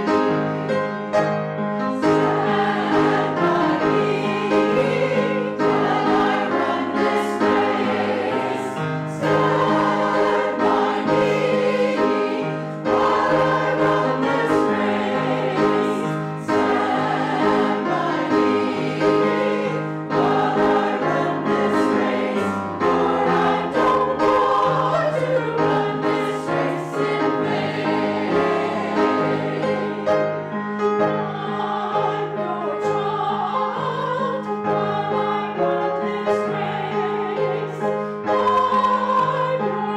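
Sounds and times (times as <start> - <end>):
instrumental accompaniment: 0.0 - 39.9
voices singing together: 2.0 - 39.9.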